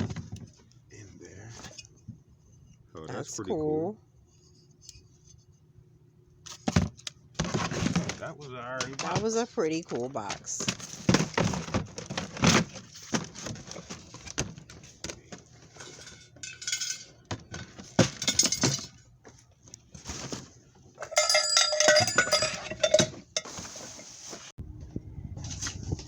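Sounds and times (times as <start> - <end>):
small objects clinking: 15.8 - 17.2, 21.0 - 23.5.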